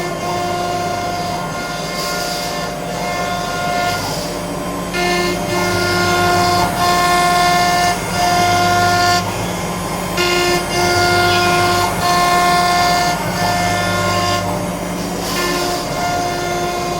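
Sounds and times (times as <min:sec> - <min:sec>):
router low hum: 0:00.0 - 0:16.9
router pitched whine: 0:00.0 - 0:16.9.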